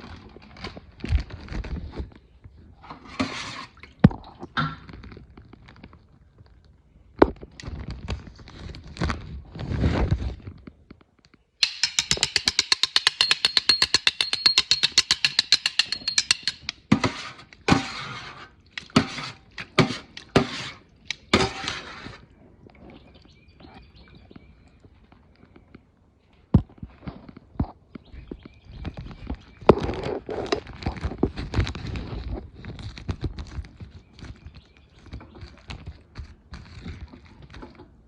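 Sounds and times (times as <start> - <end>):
rapid tapping: 11.6 - 16.7.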